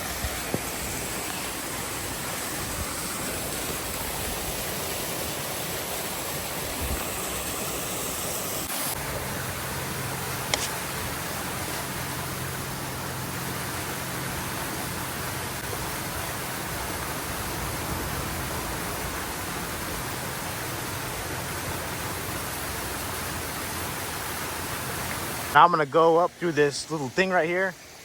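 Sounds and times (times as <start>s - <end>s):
waterfall rushing: 0.0s - 28.0s
sharp click: 10.5s - 10.8s.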